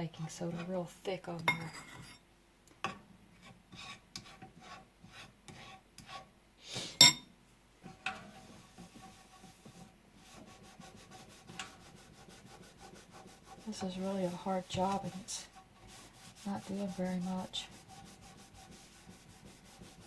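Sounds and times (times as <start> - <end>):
scrubbing on glass door: 7.9 - 20.0.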